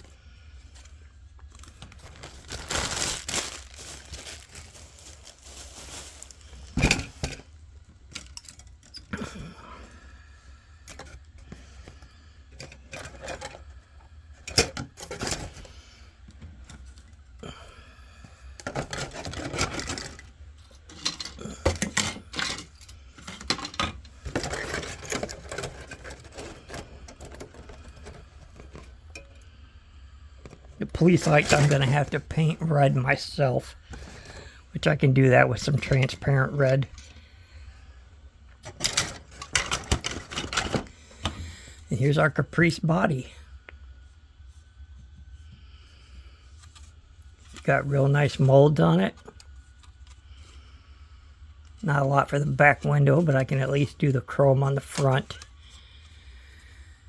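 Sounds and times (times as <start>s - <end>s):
packaging crinkling: 1.4s - 6.8s
plastic parts clicking and knocking: 18.6s - 29.4s, 38.6s - 41.5s.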